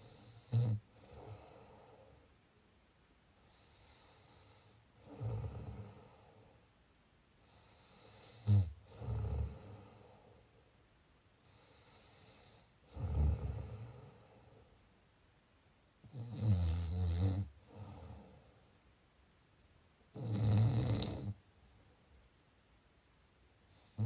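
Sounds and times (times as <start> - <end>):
person snoring: 0.0 - 2.0, 3.5 - 6.2, 7.6 - 10.0, 11.6 - 14.2, 16.1 - 18.3, 20.2 - 21.4, 23.8 - 24.0
quiet breaths: 0.0 - 24.0.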